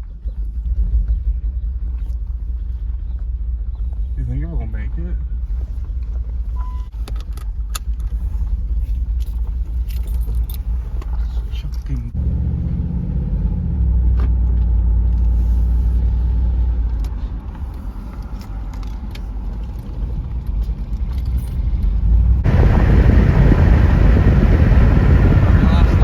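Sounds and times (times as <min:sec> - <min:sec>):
knocking engine running: 0:22.4 - 0:26.0.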